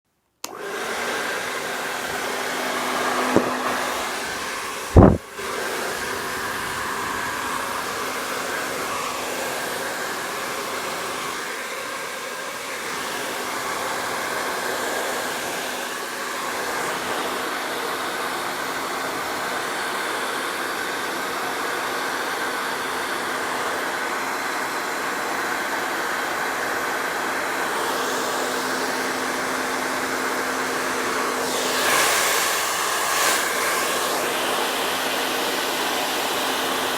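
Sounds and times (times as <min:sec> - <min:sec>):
hair dryer running: 0:00.4 - 0:36.9.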